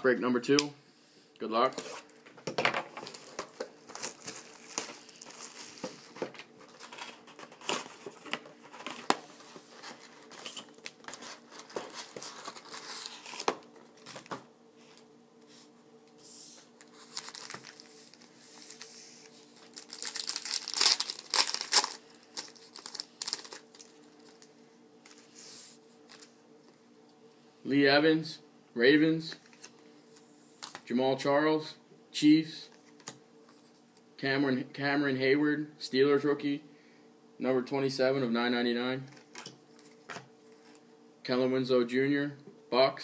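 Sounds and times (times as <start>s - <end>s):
faint steady hum: 0.0s - 43.0s
card packaging crinkling and tearing: 2.9s - 14.4s, 16.8s - 25.3s.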